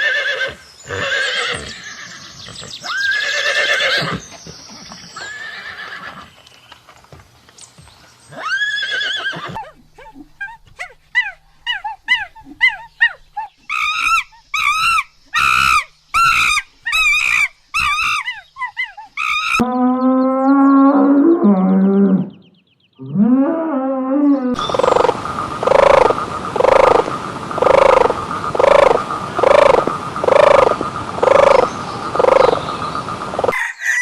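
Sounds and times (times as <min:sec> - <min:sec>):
horse neighing: 0:00.0 - 0:04.5, 0:05.1 - 0:06.3, 0:08.4 - 0:09.7
animal short rising and falling calls: 0:24.5 - 0:32.6.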